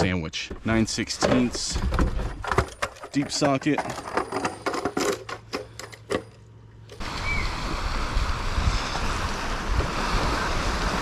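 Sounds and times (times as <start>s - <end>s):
lake water washing: 7.0s - 11.0s
wind buffeting microphone: 7.0s - 11.0s.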